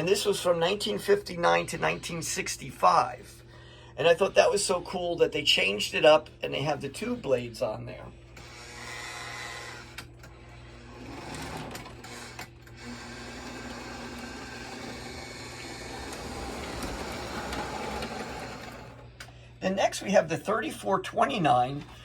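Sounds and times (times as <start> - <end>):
toy train motor whirring: 8.4 - 19.0
wheels rolling on rails: 10.9 - 19.0.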